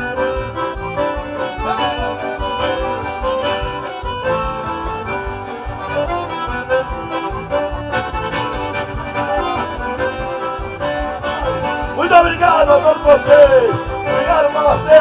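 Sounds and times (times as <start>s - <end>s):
accordions playing chords: 0.0s - 15.0s
steady drum beat: 0.0s - 15.0s.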